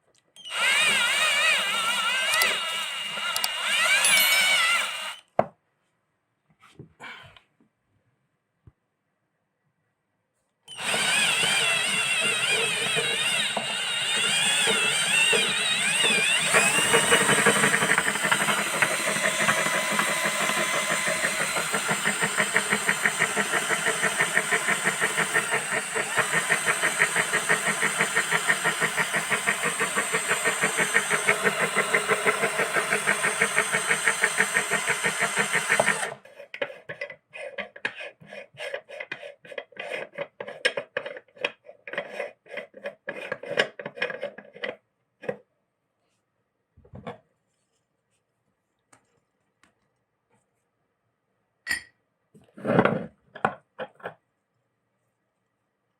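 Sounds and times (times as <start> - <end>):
meat grinder motor running: 0.5 - 5.2, 10.8 - 36.2.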